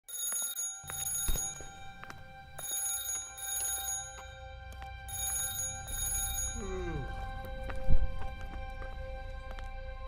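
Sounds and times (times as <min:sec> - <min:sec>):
alarm ringing: 0:00.1 - 0:04.4, 0:05.1 - 0:07.1.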